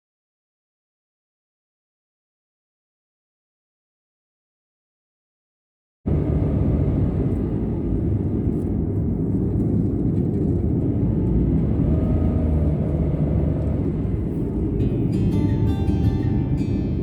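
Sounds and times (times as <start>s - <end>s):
vehicle low rumble: 6.1s - 17.0s
faint rising and falling tone: 14.8s - 17.0s.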